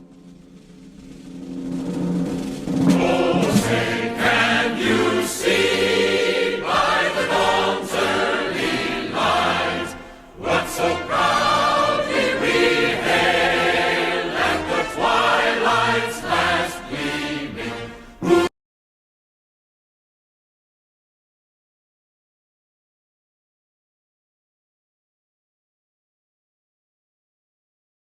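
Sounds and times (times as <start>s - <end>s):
choir singing long notes: 2.2s - 18.5s.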